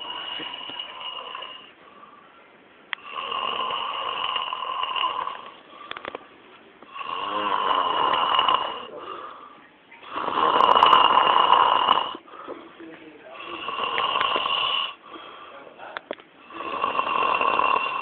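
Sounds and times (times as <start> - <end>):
man snoring: 0.0 - 1.8, 3.0 - 5.6, 6.9 - 9.3, 10.0 - 12.2, 13.4 - 15.0, 16.4 - 18.0
quiet breathing: 0.0 - 18.0.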